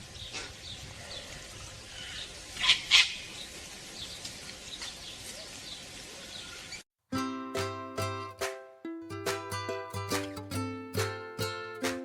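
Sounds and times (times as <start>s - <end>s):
small birds chirping: 0.0s - 6.8s
ukulele music: 7.1s - 12.0s.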